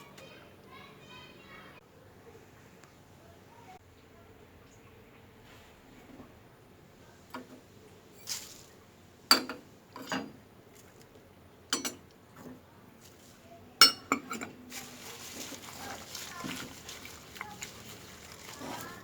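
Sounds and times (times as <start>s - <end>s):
dishes and utensils clinking: 9.3s - 10.4s, 11.7s - 12.0s, 13.8s - 19.0s.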